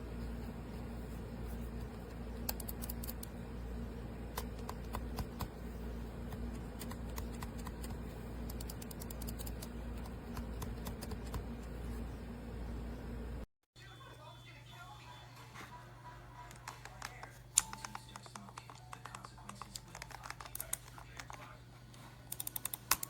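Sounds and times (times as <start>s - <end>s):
low hum: 0.0s - 13.5s
mouse buttons clicking: 16.6s - 21.4s.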